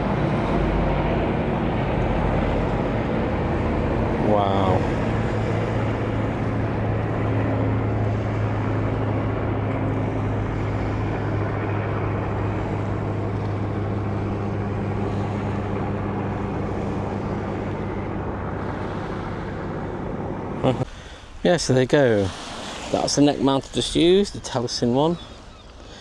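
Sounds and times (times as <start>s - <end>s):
outdoor noise: 0.0s - 4.3s, 10.6s - 26.0s
low engine drone: 0.0s - 26.0s.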